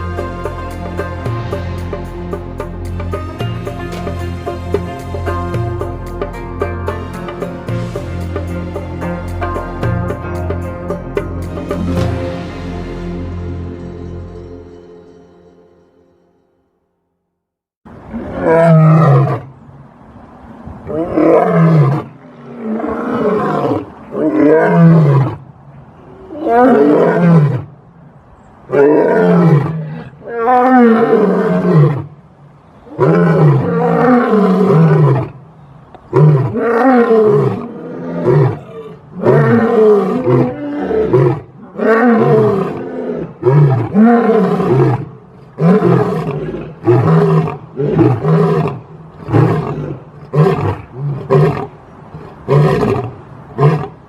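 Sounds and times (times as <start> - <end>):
lion roaring: 20.9 - 25.4, 28.7 - 32.1, 32.9 - 35.4, 36.1 - 54.0.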